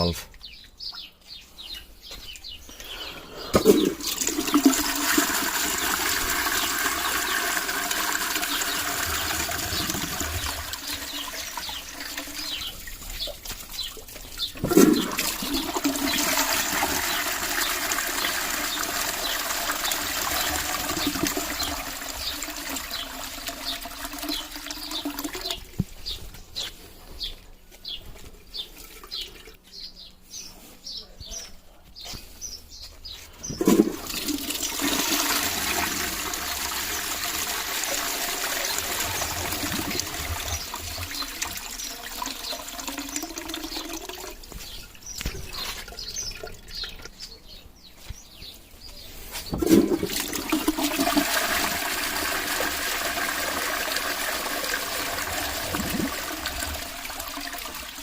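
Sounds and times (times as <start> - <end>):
toilet flushing: 3.4 - 25.8, 33.5 - 46.5, 49.4 - 58.0
water rushing through toilet pan: 3.4 - 26.0, 33.5 - 47.0, 49.4 - 58.0.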